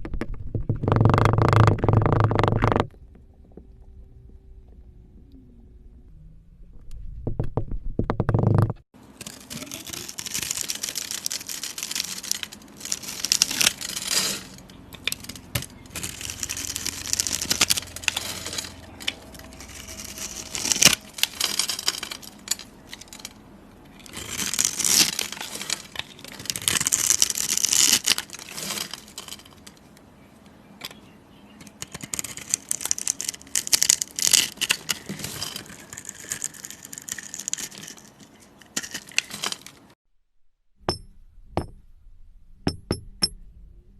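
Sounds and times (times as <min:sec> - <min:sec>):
crackling and crinkling with snaps: 0:09.1 - 0:40.0.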